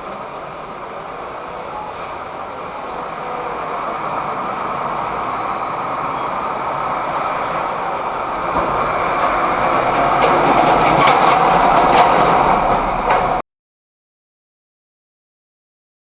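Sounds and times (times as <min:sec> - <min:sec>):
road traffic noise: 0:00.0 - 0:13.4
vehicles passing close by: 0:00.0 - 0:13.4.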